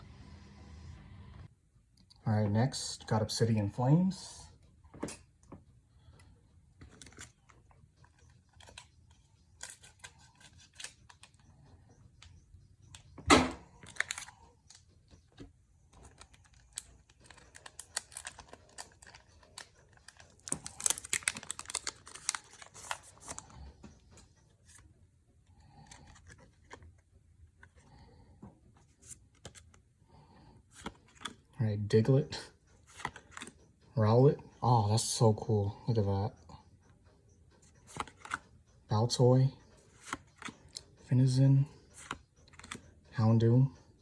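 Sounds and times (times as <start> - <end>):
cards rustling: 6.8 - 24.9, 25.5 - 29.8, 30.5 - 31.6, 32.6 - 33.7, 37.6 - 38.6, 39.8 - 41.0, 41.8 - 43.0
foil wrapper crinkling: 13.7 - 14.8, 16.0 - 23.6
foil pack ripping: 16.7 - 23.4.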